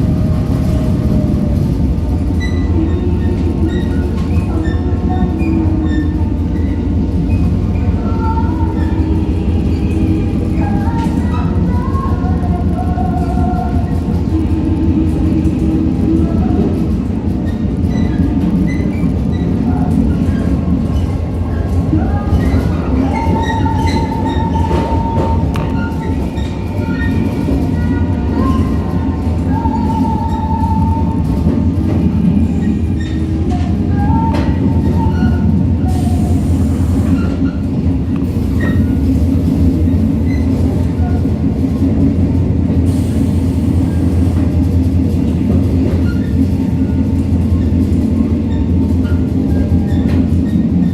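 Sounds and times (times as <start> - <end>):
train wheels rumbling on rails: 0.0 - 50.9
faint squeaks and clicks: 2.4 - 9.0, 17.4 - 28.9, 45.8 - 50.9.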